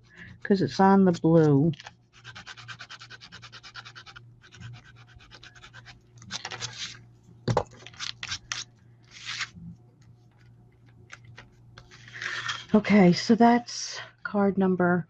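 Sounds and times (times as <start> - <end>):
rubbing on cardstock: 2.2 - 6.9.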